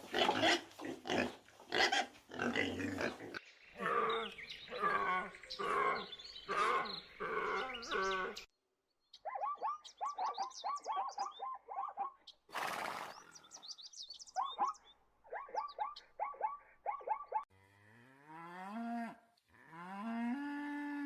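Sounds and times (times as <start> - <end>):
birds chirping: 2.3 - 17.4
cow mooing: 3.8 - 8.4, 17.6 - 21.0.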